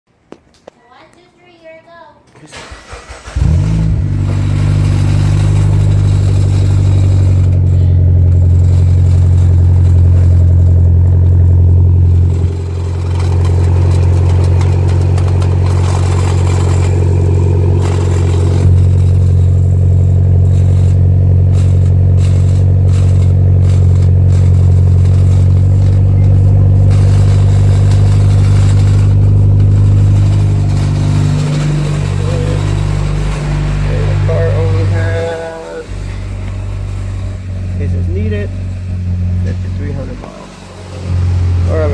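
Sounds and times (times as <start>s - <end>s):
car engine idling: 2.6s - 41.9s
person talking: 33.8s - 36.0s.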